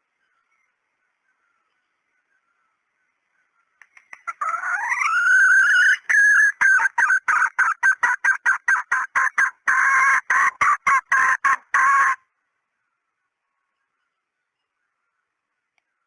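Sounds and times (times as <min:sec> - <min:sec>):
hen clucking: 0:04.2 - 0:12.2
hen cackling calls: 0:04.2 - 0:12.3.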